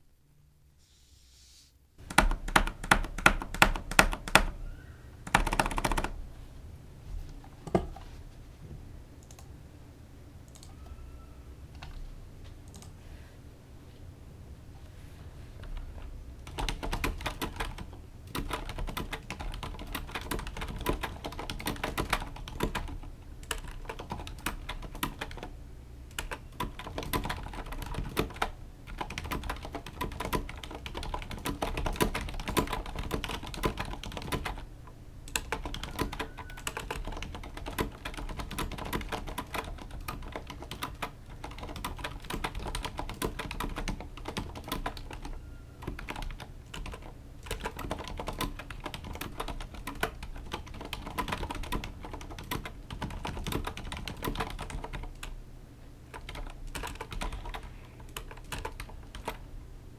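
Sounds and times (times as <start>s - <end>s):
mechanical keyboard typing: 2.0s - 6.2s, 9.2s - 9.5s, 12.6s - 12.9s, 15.6s - 25.5s, 26.1s - 34.7s, 35.3s - 55.4s, 56.1s - 59.5s.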